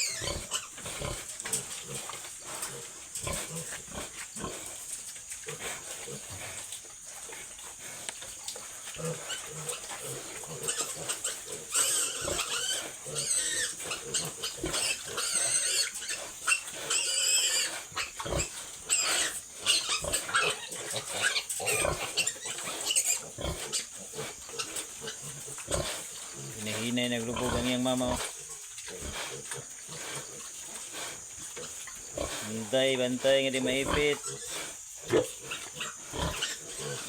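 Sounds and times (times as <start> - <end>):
piglets squealing: 0.0 - 0.7, 10.6 - 23.9.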